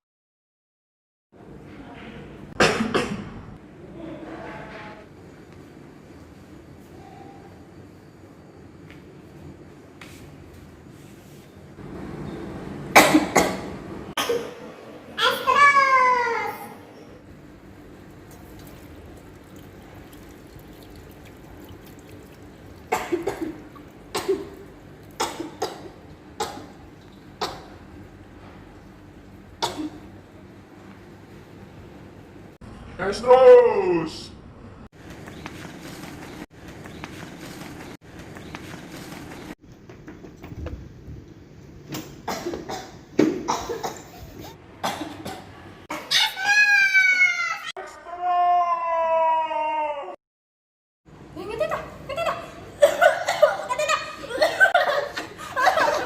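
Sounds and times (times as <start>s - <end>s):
person coughing: 2.6s - 3.4s, 22.9s - 24.6s, 29.6s - 30.1s.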